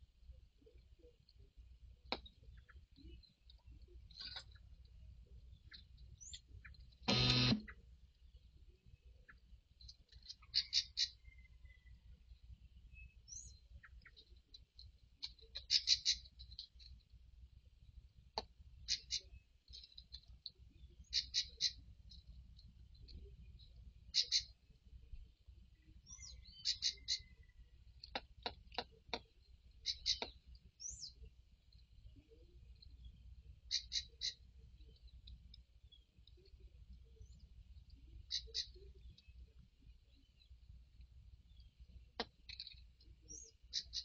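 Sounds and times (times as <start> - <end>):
faint bird chirps: 0.0 - 18.2, 18.8 - 44.0
bird calls: 5.4 - 14.4, 15.2 - 17.0, 18.8 - 22.3, 22.9 - 40.7, 41.5 - 44.0.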